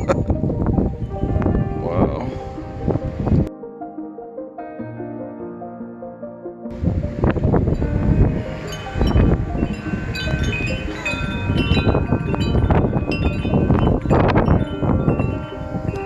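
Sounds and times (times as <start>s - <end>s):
wind rumbling on microphone: 0.0s - 3.5s, 6.7s - 16.0s
wind chimes ringing: 6.7s - 16.0s.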